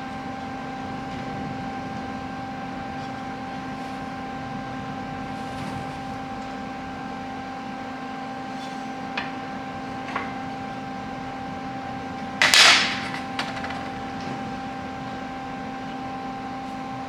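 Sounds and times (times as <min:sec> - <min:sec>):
shop hum: 0:05.2 - 0:17.0
loud metal clank: 0:12.4 - 0:13.9.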